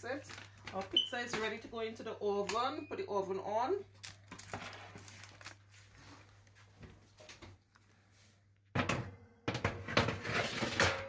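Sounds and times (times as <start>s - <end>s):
kitchen items knocking and clattering: 8.7s - 11.0s.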